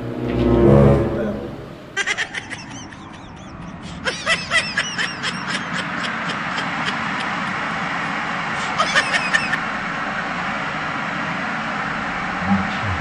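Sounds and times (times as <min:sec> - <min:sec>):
short high squeaks: 0:00.0 - 0:01.9.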